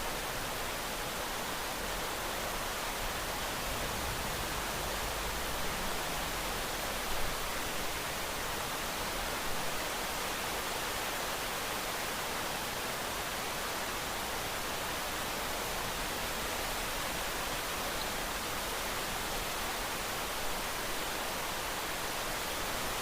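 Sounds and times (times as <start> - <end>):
steady rain hiss: 0.0 - 23.0.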